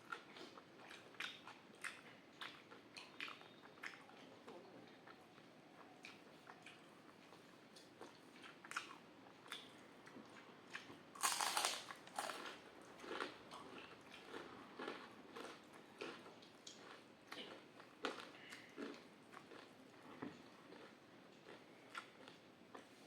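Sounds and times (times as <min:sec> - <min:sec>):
chewing with crackles: 0:00.0 - 0:23.0
crunching bite: 0:11.2 - 0:13.2.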